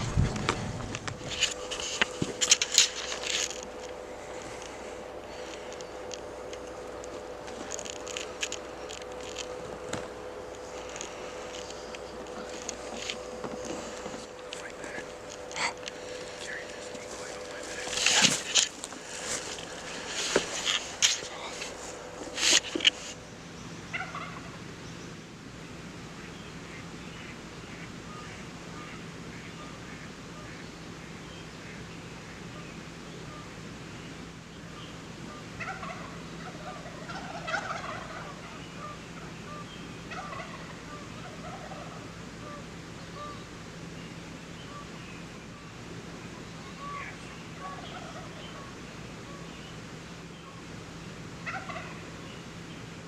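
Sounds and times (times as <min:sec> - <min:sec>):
steady low hum: 0:00.0 - 0:53.0
turkey gobbling: 0:23.9 - 0:24.7, 0:34.8 - 0:43.5, 0:44.6 - 0:49.7, 0:51.4 - 0:52.4.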